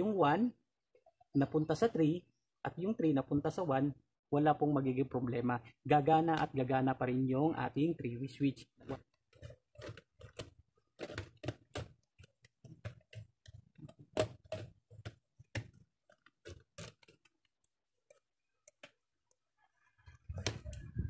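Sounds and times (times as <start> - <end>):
electrical wire clicking and rustling: 8.8 - 21.0.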